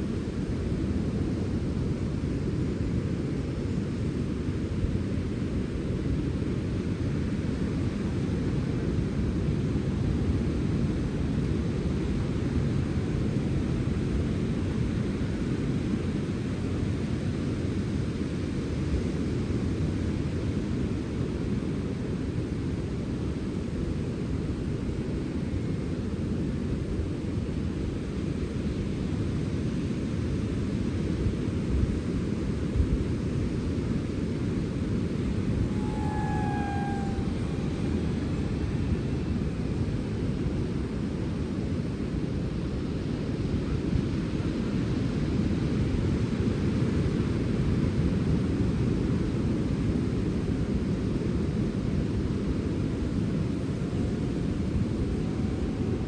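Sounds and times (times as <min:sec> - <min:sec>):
wind blowing: 0:35.0 - 0:40.0.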